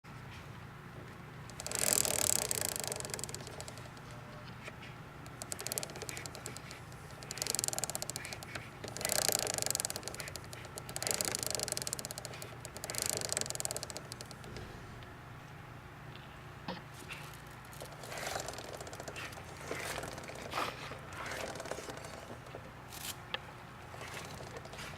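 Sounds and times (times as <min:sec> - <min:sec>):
faint steady hum: 0:00.1 - 0:24.9
chain clicking and rattling: 0:01.5 - 0:04.1, 0:05.3 - 0:14.4.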